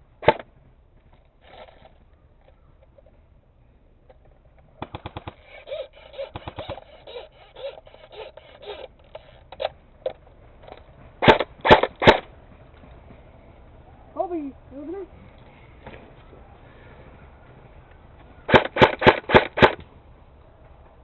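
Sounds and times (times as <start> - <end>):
airsoft gun shots: 0.2 - 0.5, 4.8 - 5.4, 6.3 - 6.8, 11.2 - 12.3, 18.5 - 19.9.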